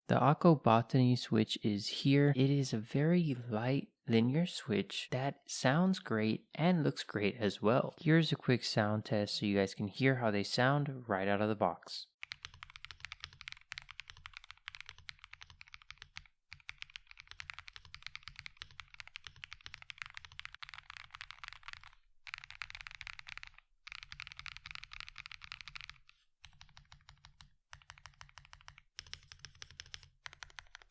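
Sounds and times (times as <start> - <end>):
mechanical keyboard typing: 12.2 - 30.9.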